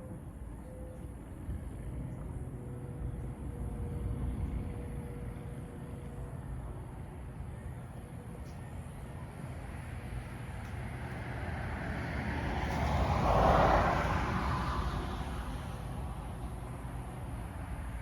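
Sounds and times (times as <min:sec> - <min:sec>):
wind rumble on microphone: 0:00.0 - 0:18.0
vehicle passing by: 0:09.6 - 0:18.0.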